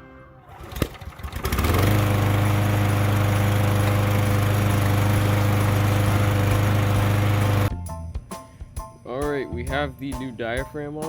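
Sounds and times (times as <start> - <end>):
string trimmer engine running: 0.6 - 7.7.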